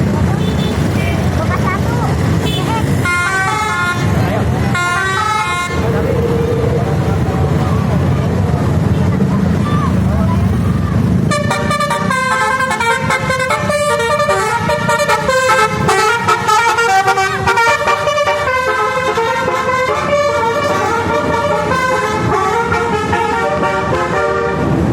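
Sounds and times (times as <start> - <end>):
musical air horn playing tune: 11.3 - 24.8.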